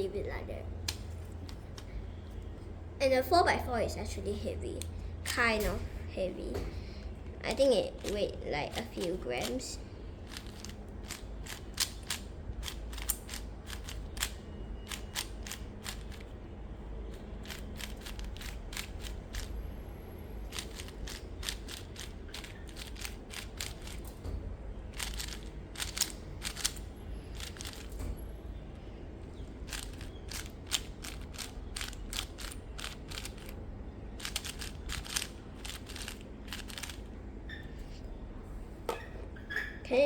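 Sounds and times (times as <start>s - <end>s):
plastic puzzle cubes clicking: 10.2s - 16.2s, 17.4s - 19.5s, 20.5s - 24.1s, 24.9s - 28.0s, 29.7s - 33.6s, 34.2s - 37.1s.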